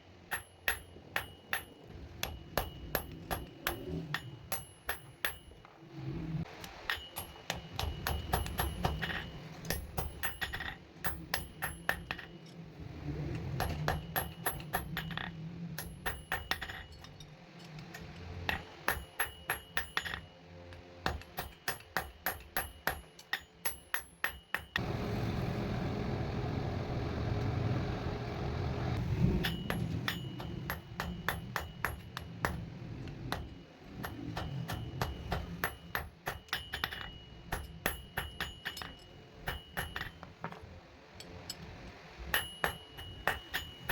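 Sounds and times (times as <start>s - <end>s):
hammer striking iron on anvil: 0.3s - 5.6s, 6.8s - 12.3s, 13.6s - 17.1s, 18.5s - 20.3s, 21.0s - 24.8s, 29.4s - 32.6s, 33.3s - 40.3s, 42.3s - 43.9s
steady rushing noise: 24.8s - 35.9s.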